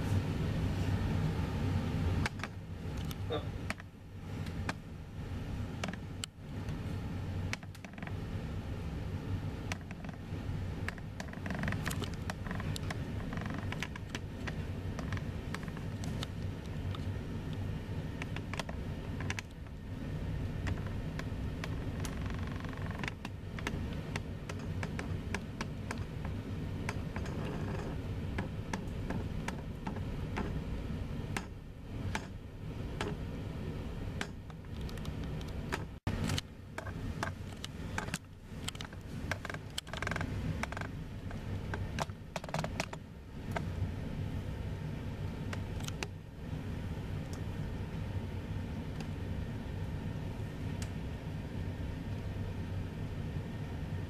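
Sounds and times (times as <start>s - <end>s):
steady low rumble: 0.0s - 54.0s.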